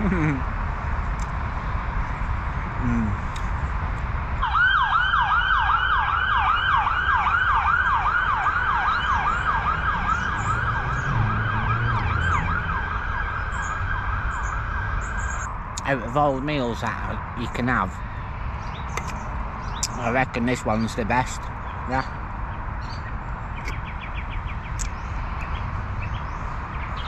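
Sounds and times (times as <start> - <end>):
road traffic rumble: 0.0 - 27.0
emergency siren yelping: 4.4 - 15.6.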